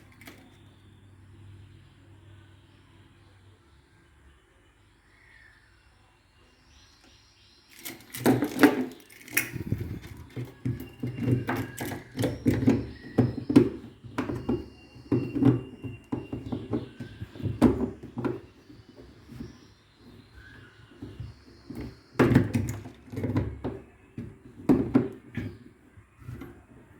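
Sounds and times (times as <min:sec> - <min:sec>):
hard objects knocking and clattering: 0:07.8 - 0:26.9.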